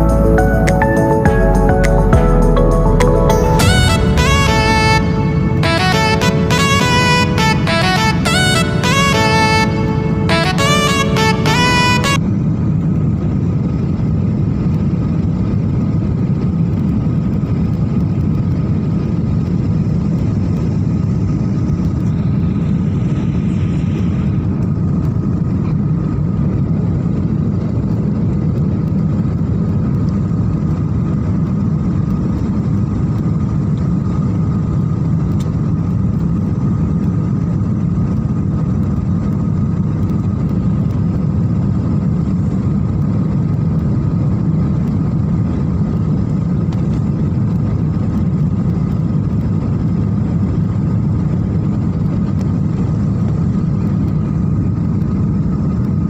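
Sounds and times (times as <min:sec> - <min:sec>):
airliner cabin rumble: 0:00.0 - 0:56.0.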